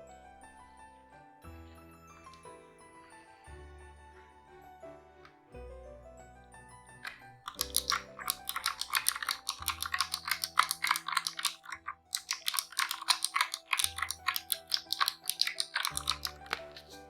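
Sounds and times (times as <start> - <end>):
keyboard key clicks: 7.1 - 17.0.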